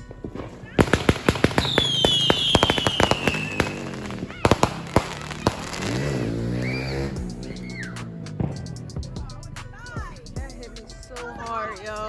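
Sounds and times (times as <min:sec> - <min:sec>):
fireworks bangs and crackles: 0:00.0 - 0:09.2
falling firework whistle: 0:00.7 - 0:08.1.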